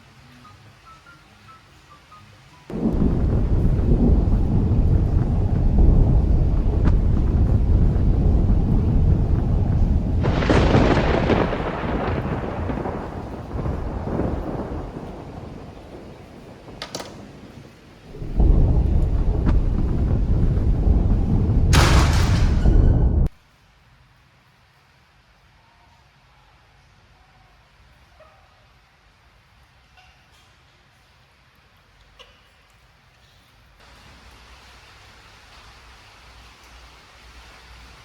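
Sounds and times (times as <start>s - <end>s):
sharp thunder crack: 2.7s - 23.3s
thunder rumbling: 2.7s - 23.3s.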